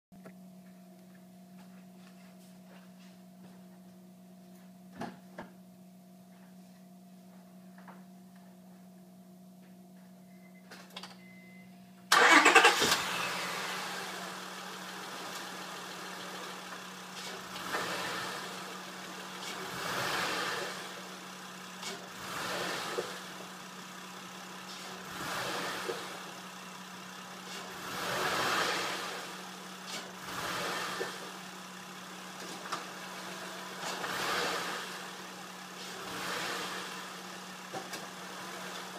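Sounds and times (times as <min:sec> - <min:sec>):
car engine starting and revving: 0:12.1 - 0:38.9.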